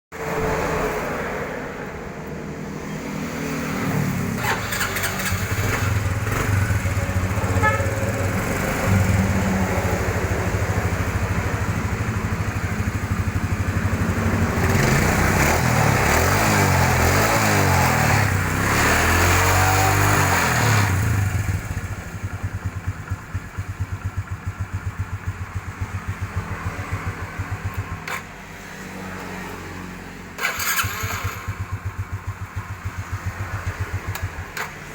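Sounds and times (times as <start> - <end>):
motorcycle engine idling: 4.2 - 15.7, 21.0 - 28.4, 30.5 - 34.9.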